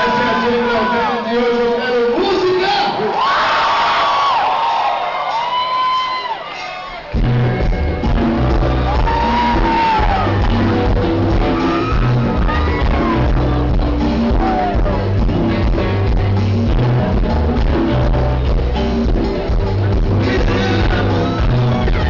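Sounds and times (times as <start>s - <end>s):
crowd shouting and whooping: 0.0s - 1.7s, 2.5s - 15.3s, 20.4s - 22.0s
live band with bass and drums: 5.4s - 22.0s.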